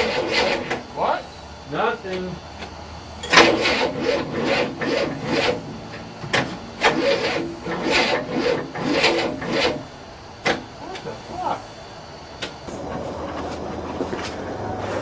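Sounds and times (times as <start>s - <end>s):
car engine cranking: 3.2s - 9.8s, 12.6s - 15.0s.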